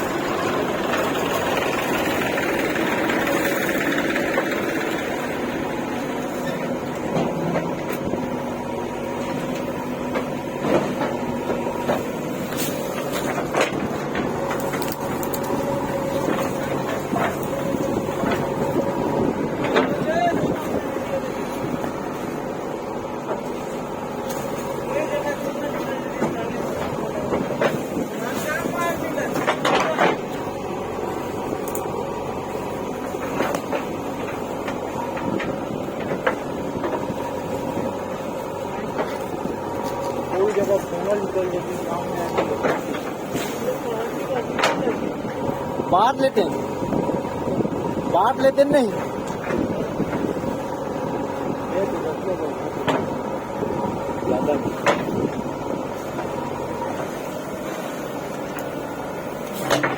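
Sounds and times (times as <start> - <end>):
engine humming: 0.0 - 59.9
sharp knocks and clatters: 59.5 - 59.9.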